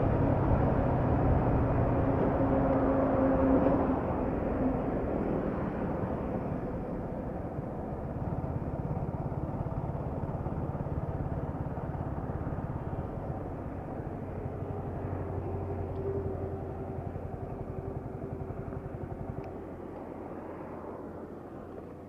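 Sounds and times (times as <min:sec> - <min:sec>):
motorcycle engine running: 0:06.0 - 0:22.0.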